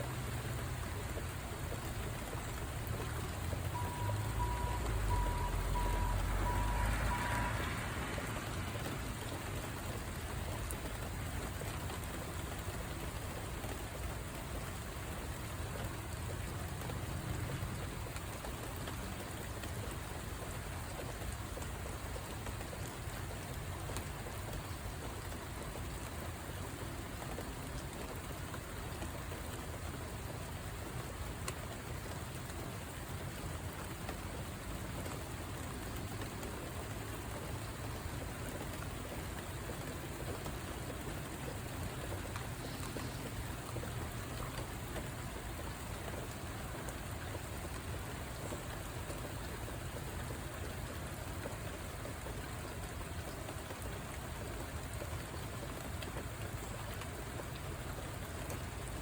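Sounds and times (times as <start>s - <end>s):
rain falling: 0.0s - 59.0s
short beeps: 3.8s - 7.5s.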